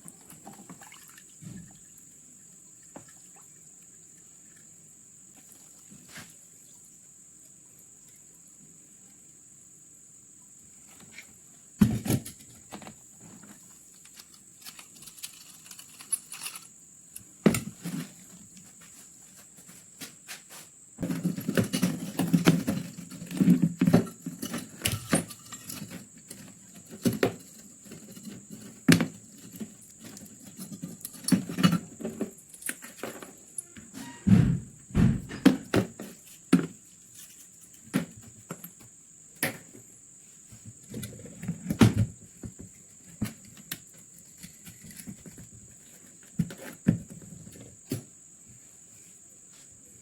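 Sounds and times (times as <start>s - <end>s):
metal parts knocking and clinking: 14.1s - 16.7s
metal clattering and rubbing: 33.9s - 35.7s.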